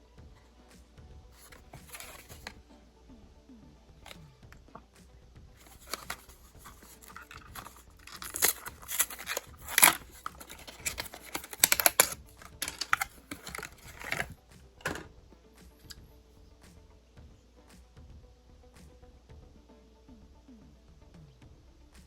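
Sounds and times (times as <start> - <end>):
packaging being torn open: 1.4 - 2.5, 5.6 - 14.3.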